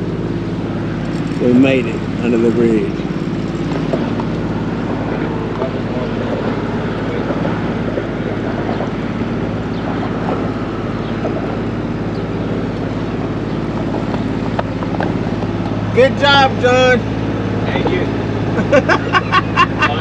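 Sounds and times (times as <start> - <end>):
boat diesel engine drone: 0.0 - 20.0
wind buffeting microphone: 2.9 - 16.0.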